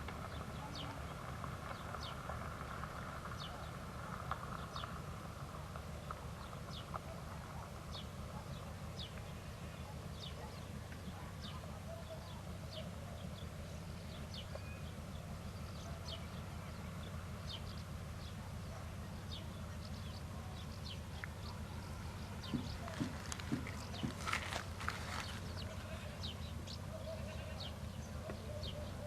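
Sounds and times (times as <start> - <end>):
diesel locomotive idling: 0.0 - 29.0
bird chirping: 6.1 - 29.0.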